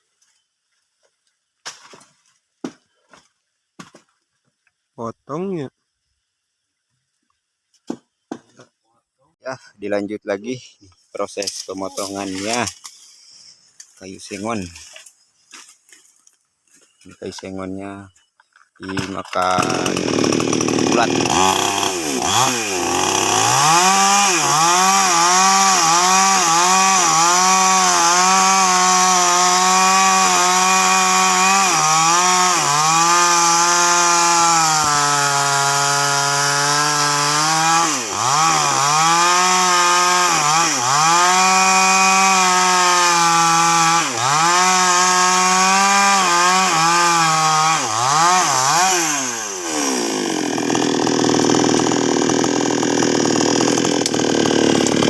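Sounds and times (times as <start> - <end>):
chainsaw cutting log: 11.3 - 16.4, 18.8 - 55.0.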